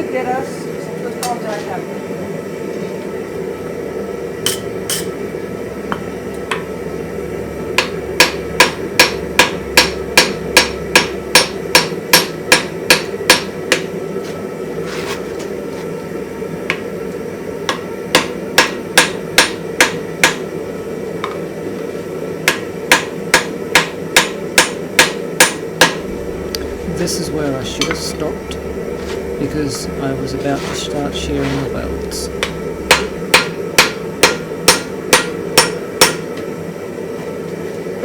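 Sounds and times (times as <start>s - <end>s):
hammer ringing on hot iron: 4.4s - 5.2s, 7.7s - 13.9s, 17.7s - 20.5s, 22.4s - 36.5s.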